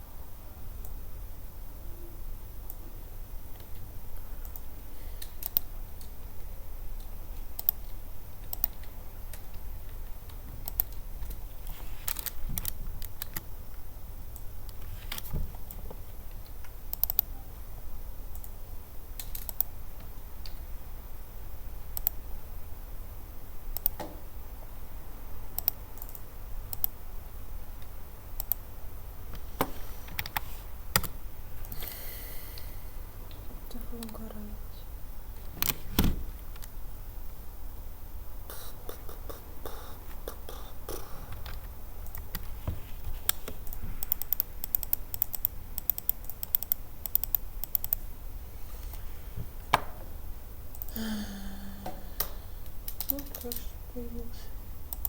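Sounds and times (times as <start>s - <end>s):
steady low hum: 0.0s - 55.0s
computer keyboard keystrokes: 3.6s - 6.2s, 7.0s - 11.4s, 12.1s - 13.5s, 14.3s - 17.3s, 19.2s - 19.7s, 21.9s - 22.2s, 23.7s - 24.1s, 25.5s - 27.0s, 28.4s - 28.6s, 30.1s - 31.8s, 41.3s - 42.6s, 43.3s - 48.0s, 52.2s - 53.7s.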